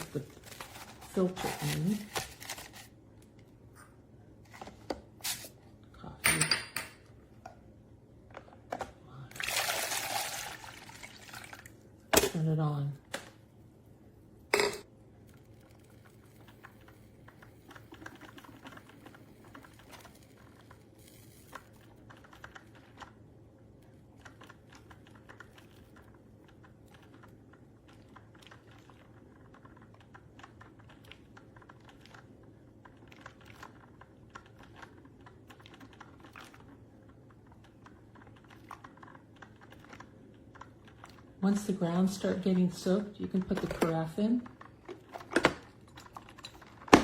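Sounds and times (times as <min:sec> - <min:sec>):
coffee maker ticking and crackling: 0:15.2 - 0:23.2.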